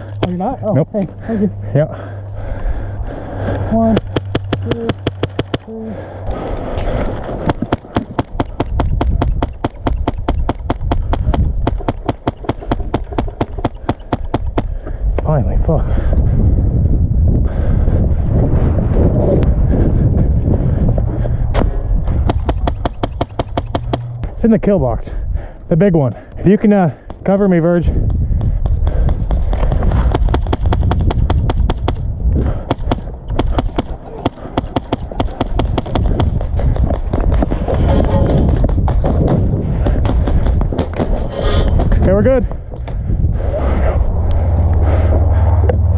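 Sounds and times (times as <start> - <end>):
low thuds of movement: 1.9 - 24.5, 25.1 - 45.9
airsoft rifle shots: 3.8 - 5.6, 7.5 - 14.7, 22.2 - 24.2, 32.6 - 37.6
low thumping of gear: 6.3 - 15.3, 18.4 - 24.4, 25.4 - 45.9.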